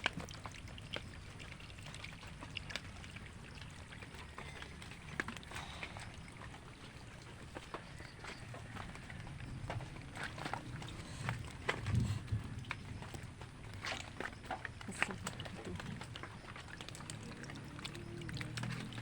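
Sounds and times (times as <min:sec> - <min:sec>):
small splashes and drips: 0:00.0 - 0:19.0
water pouring and trickling: 0:00.0 - 0:19.0.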